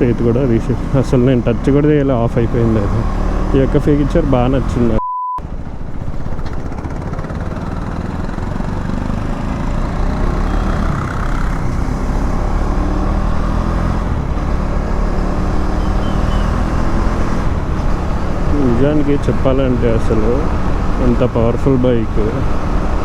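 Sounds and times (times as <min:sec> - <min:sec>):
wind and road noise: 0:00.0 - 0:23.0
motorcycle engine running: 0:05.4 - 0:13.5.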